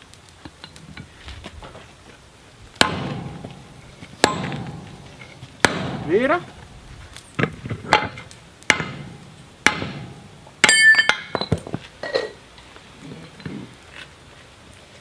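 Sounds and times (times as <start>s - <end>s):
hammer striking steel: 2.8s - 6.7s, 7.9s - 11.6s
bright metallic ring: 10.1s - 11.6s.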